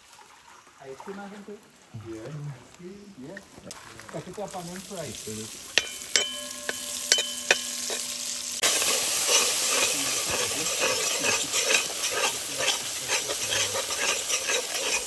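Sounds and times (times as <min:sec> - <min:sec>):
food sizzling in hot oil: 0:04.3 - 0:15.0
spoon scraping pot: 0:04.8 - 0:15.0
metal knocks on a pot: 0:05.8 - 0:08.4.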